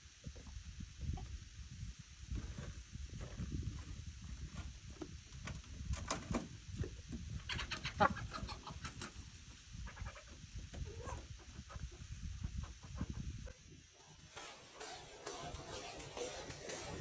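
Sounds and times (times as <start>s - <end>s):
peafowl clucking: 7.4s - 13.3s.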